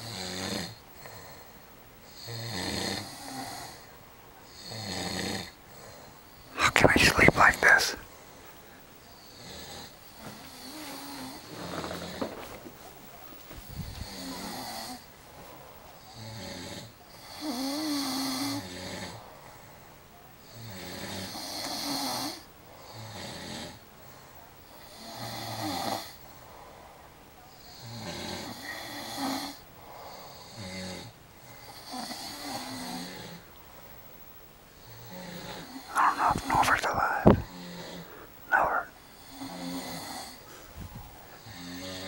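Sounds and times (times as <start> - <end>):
quiet breaths: 0.0 - 42.0
person snoring rasping: 35.9 - 38.9.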